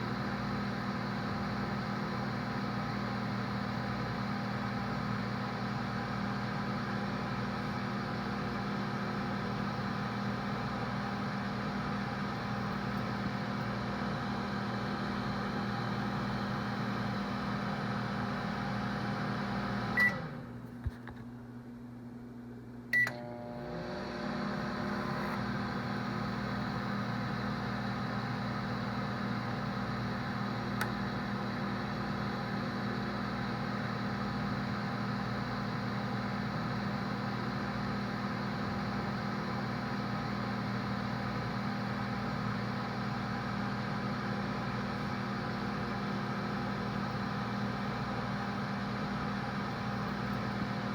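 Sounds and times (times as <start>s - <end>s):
microwave oven humming: 0.0s - 50.9s
microwave beep: 18.0s - 20.4s, 22.9s - 23.8s
microwave click: 22.9s - 23.4s, 30.6s - 31.5s.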